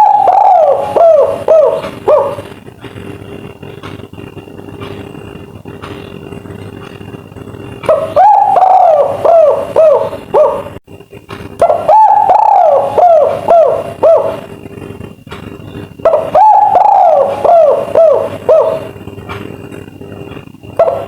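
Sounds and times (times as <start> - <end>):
dove cooing: 0.0 - 3.0, 7.8 - 10.8, 11.6 - 14.7, 15.3 - 21.0
low background hum: 0.0 - 21.0.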